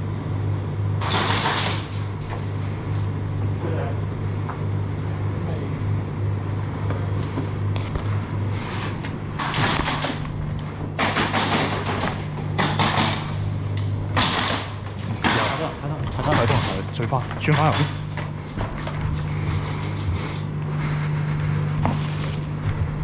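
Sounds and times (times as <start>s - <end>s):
steady low hum: 0.0s - 23.0s
airsoft guns firing bursts: 11.0s - 13.3s.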